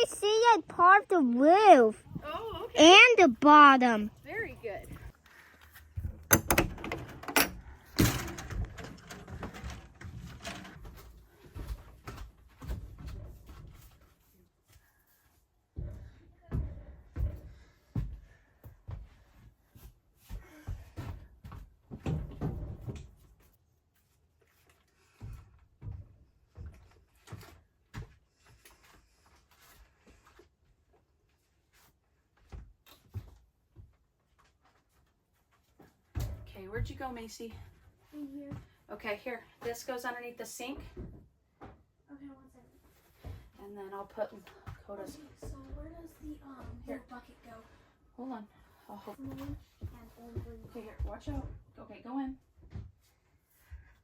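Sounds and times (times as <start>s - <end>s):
sharp knocks and clunks: 6.0s - 9.8s.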